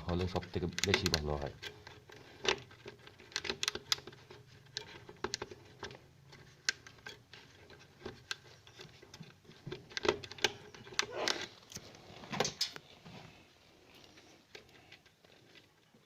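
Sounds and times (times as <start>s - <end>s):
clicks and scratching on plastic: 0.0s - 16.0s.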